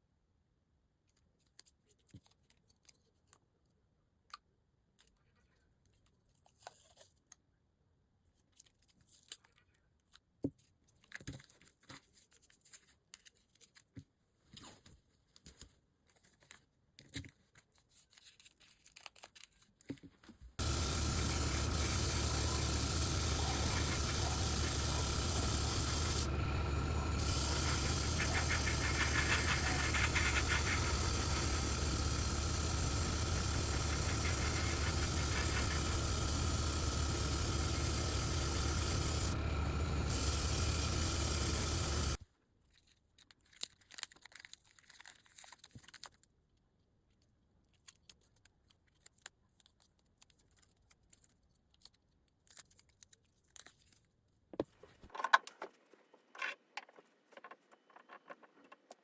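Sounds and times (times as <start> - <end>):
airbrush spraying hiss: 20.6 - 42.2
compressor humming: 20.6 - 42.2
small parts clicking: 20.6 - 42.2.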